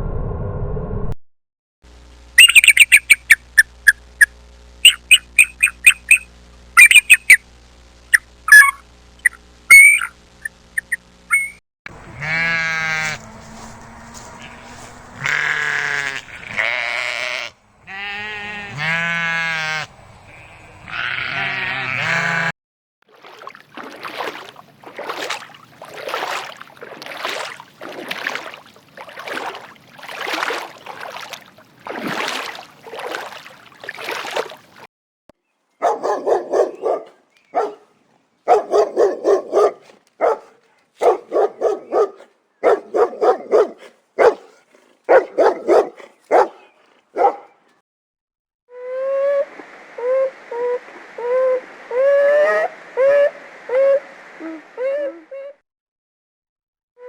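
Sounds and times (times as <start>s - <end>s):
rough noisy animal calls: 10.8s - 22.5s
long wavering bleats: 12.0s - 22.5s
dog barking: 35.8s - 47.6s.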